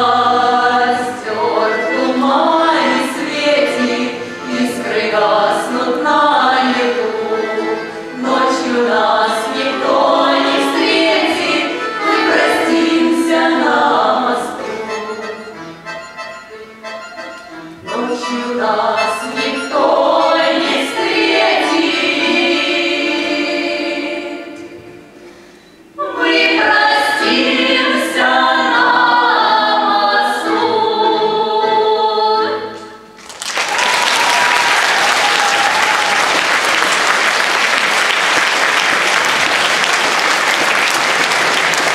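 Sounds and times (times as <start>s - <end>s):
women singing folk song in harmony: 0.0s - 15.4s, 17.8s - 25.1s, 25.8s - 33.1s.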